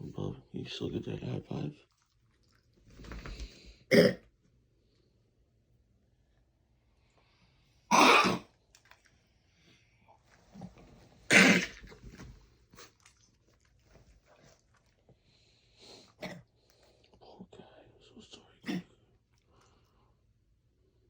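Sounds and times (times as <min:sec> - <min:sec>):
cat coughing: 0:03.9 - 0:04.2, 0:07.9 - 0:08.5, 0:11.3 - 0:11.8, 0:16.2 - 0:16.4, 0:18.6 - 0:18.9.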